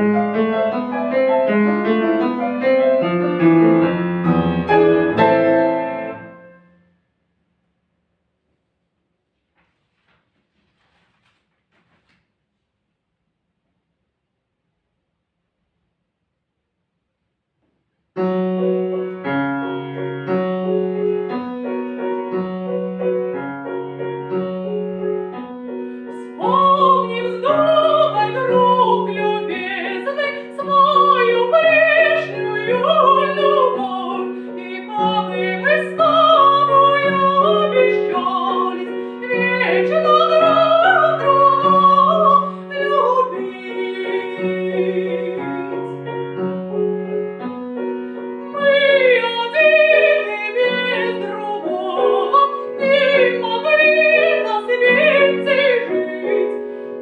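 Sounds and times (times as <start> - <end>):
piano accompaniment: 0.0 - 7.0, 18.2 - 57.0
woman singing with vibrato: 26.1 - 46.0, 48.5 - 56.6.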